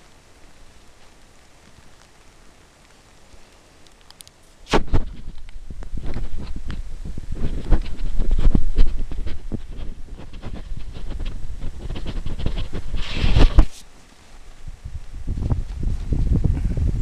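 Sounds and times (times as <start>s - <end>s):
loud hiss: 0.0s - 15.4s
wind rumbling on microphone: 0.0s - 17.0s
footsteps crunching through snow: 4.4s - 16.4s.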